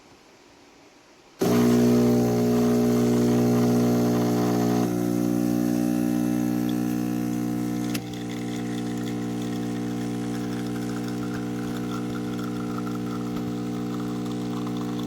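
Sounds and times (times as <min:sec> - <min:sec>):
espresso machine click: 0:01.4 - 0:15.0
espresso machine pump buzzing: 0:01.4 - 0:15.0.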